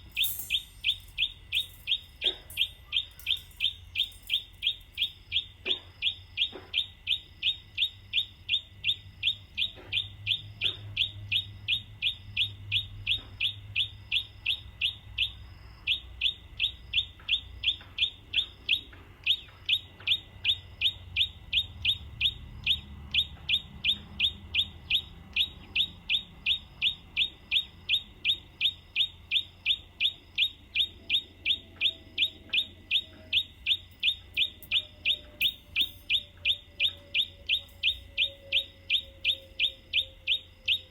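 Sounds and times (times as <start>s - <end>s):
bird call with falling notes: 0.0s - 7.9s, 27.6s - 40.9s.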